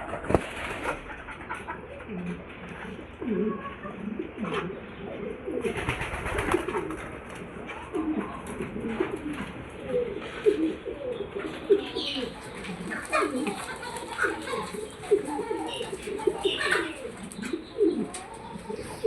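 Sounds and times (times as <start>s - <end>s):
rustling noise: 0.0s - 1.2s
birds giving low calls: 0.3s - 19.0s.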